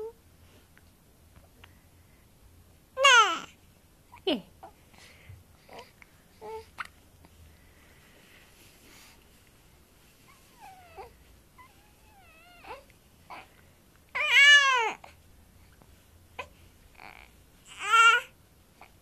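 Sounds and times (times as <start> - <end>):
baby cooing: 3.0 - 3.6, 5.6 - 6.9, 14.1 - 15.2, 16.4 - 18.9.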